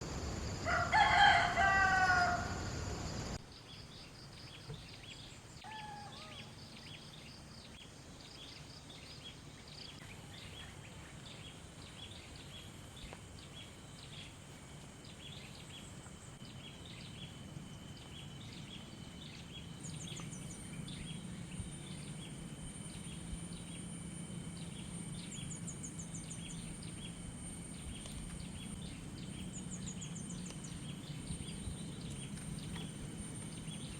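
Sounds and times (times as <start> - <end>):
steady high whine: 0.0 - 3.4, 6.7 - 33.9
rooster crowing: 0.6 - 3.1, 5.6 - 6.6.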